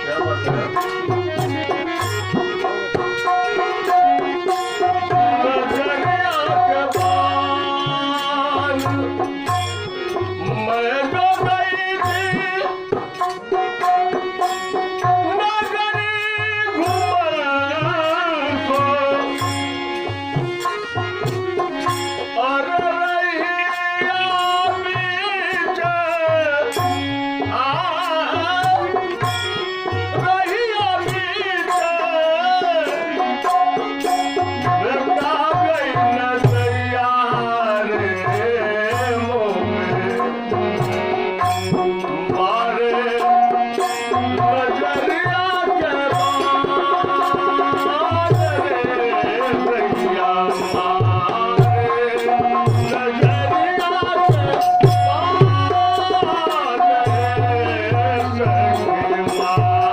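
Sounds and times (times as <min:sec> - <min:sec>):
tabla playing a rhythm: 0:00.0 - 0:59.9.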